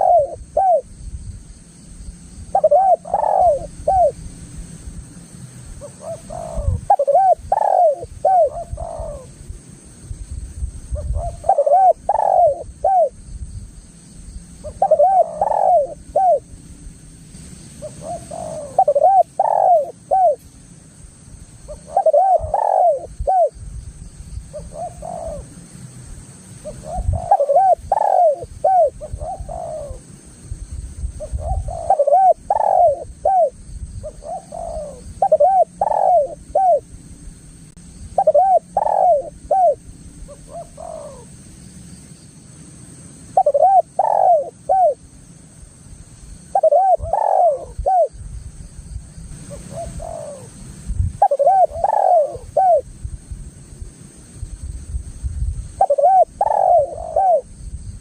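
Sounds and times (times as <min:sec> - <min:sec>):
dove cooing: 0:00.0 - 0:00.9, 0:02.5 - 0:04.2, 0:05.8 - 0:09.4, 0:10.9 - 0:13.2, 0:14.6 - 0:16.5, 0:17.8 - 0:20.4, 0:21.6 - 0:23.6, 0:24.5 - 0:25.6, 0:26.6 - 0:30.1, 0:31.2 - 0:36.9, 0:38.2 - 0:41.4, 0:43.4 - 0:45.0, 0:46.5 - 0:48.2, 0:49.4 - 0:52.9, 0:55.8 - 0:57.6.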